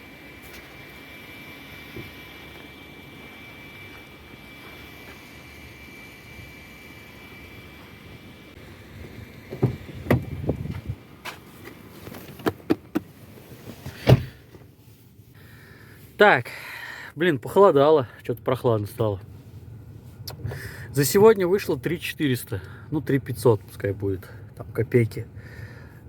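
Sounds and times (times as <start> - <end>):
thin high whine: 0.0 - 8.6
car noise inside cabin: 0.0 - 26.0
low steady hum: 0.0 - 26.0.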